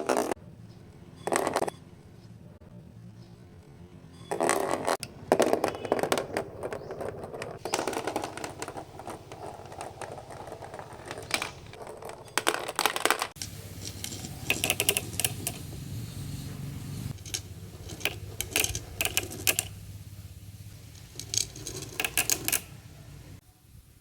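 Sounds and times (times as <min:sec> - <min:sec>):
marbles rolling down ramps: 0:00.0 - 0:00.4, 0:04.3 - 0:15.6, 0:17.1 - 0:19.8, 0:20.9 - 0:22.7.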